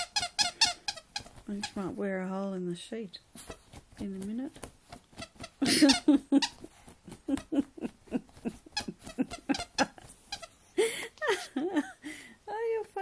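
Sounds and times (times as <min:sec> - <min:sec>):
dog scratching at a bed sheet: 0:03.4 - 0:05.6.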